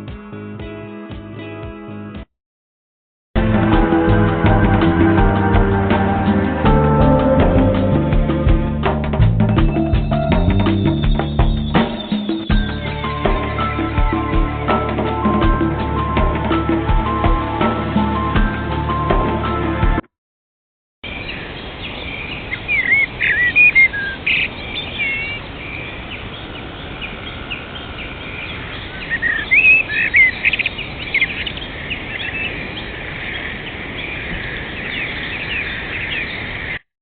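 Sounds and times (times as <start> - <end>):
small birds chirping: 9.4 - 14.5, 21.0 - 36.8.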